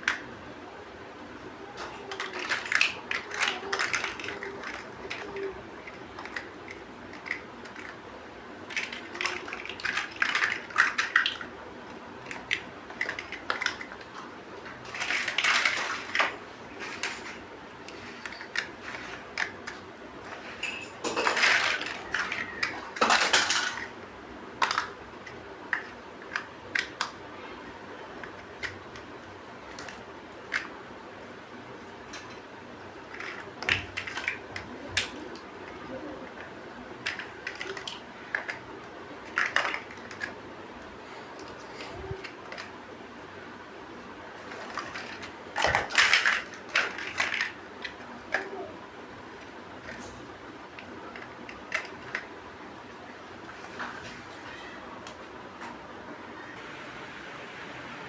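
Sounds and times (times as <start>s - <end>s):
noisy bursts of handling: 1.2s - 56.0s
plastic bricks clicking together: 1.9s - 8.0s, 8.7s - 11.5s, 12.2s - 20.4s, 24.6s - 27.2s, 33.0s - 40.4s, 44.4s - 48.6s.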